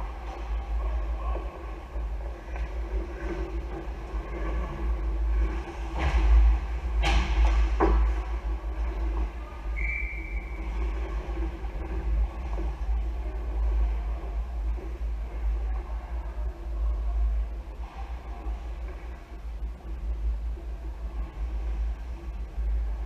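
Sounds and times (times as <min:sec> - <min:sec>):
low rumble: 0:00.0 - 0:23.0.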